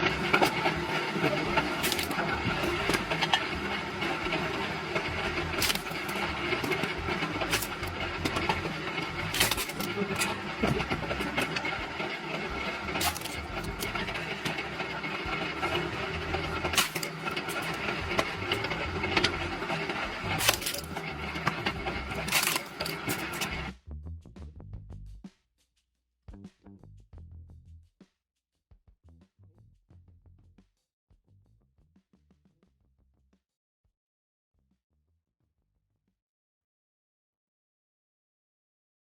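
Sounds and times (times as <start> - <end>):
machinery clatter and hum: 0.0 - 23.8.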